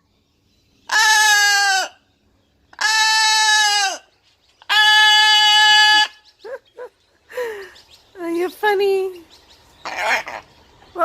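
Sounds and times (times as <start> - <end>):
macaw calling loudly: 0.9 - 2.0, 2.7 - 6.3, 9.8 - 10.6
bird chirps: 6.1 - 11.0.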